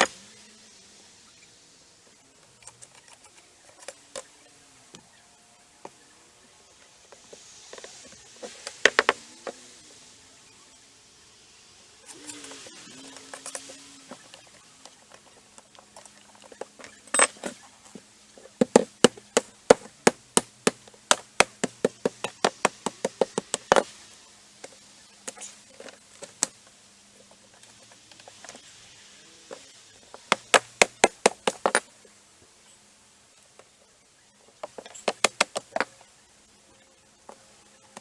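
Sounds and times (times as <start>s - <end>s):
hammer striking deck boards: 18.6s - 23.9s, 30.2s - 31.8s, 34.7s - 35.9s.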